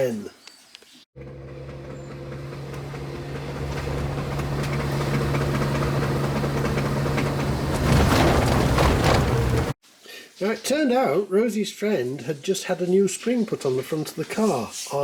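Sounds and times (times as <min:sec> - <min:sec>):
car engine and road noise: 0:01.2 - 0:09.8.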